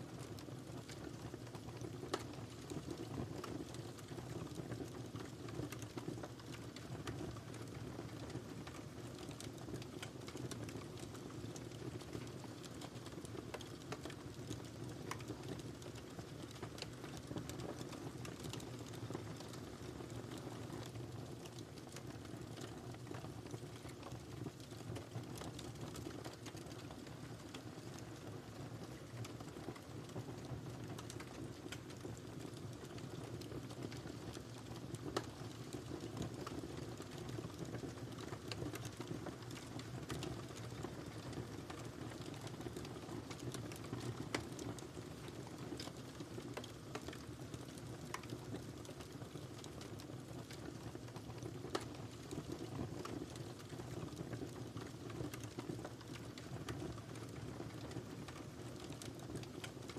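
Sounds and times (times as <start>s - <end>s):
low rumble of flames: 0.0s - 59.9s
wood fire crackling and popping: 0.0s - 59.9s.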